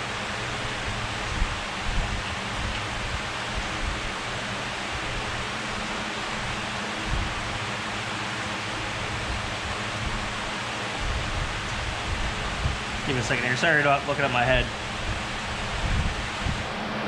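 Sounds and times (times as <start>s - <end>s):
steady hissing noise: 0.0s - 17.0s
low rumbling: 8.9s - 16.8s.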